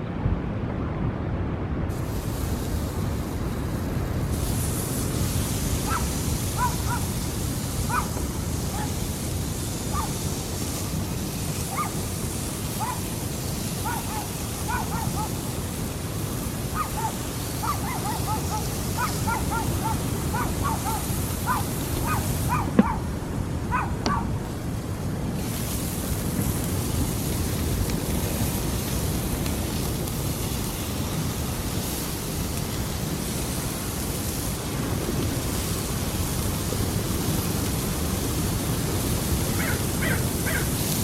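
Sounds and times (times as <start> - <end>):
wind: 0.0 - 41.0
surf: 2.0 - 41.0
short animal calls: 5.9 - 7.1, 9.9 - 10.1, 11.7 - 12.0, 13.8 - 15.4, 16.7 - 23.1, 39.6 - 40.7.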